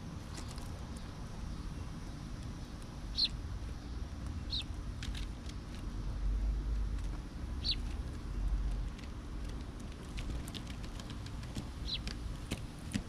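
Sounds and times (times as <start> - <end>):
low steady rumble: 0.0 - 13.0
small birds chirping: 0.0 - 13.0.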